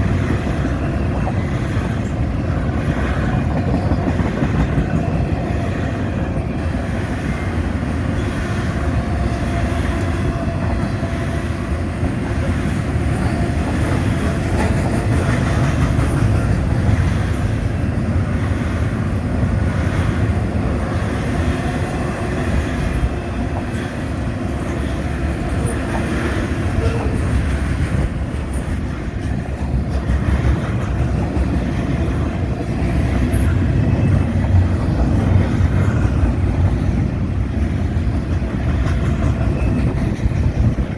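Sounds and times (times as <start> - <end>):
freight train rumbling past: 0.0 - 40.9
wheel clatter on rails: 12.0 - 40.9.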